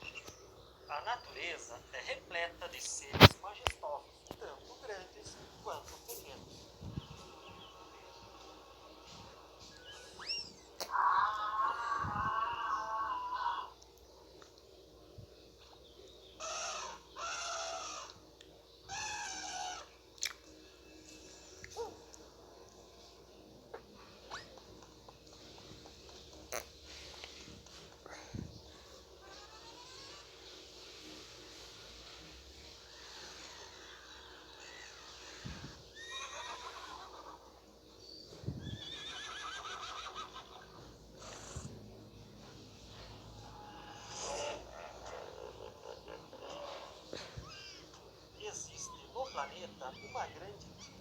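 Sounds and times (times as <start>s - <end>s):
animal harsh calls: 9.7s - 13.8s, 16.4s - 18.3s, 18.9s - 20.0s, 28.7s - 30.3s, 33.0s - 37.6s, 38.7s - 41.7s, 43.5s - 48.1s
horse whinnying: 35.9s - 37.5s, 38.6s - 41.6s.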